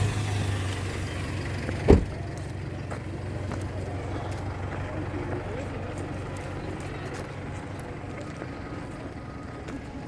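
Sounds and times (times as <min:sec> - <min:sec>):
vehicle engine idling: 0:00.0 - 0:10.0
sharp thump: 0:01.9 - 0:02.2.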